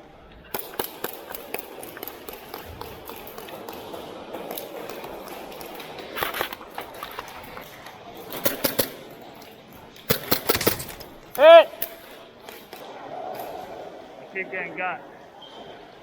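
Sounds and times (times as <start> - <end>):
airsoft guns firing: 0.5 - 6.0, 8.3 - 9.3, 10.0 - 12.2.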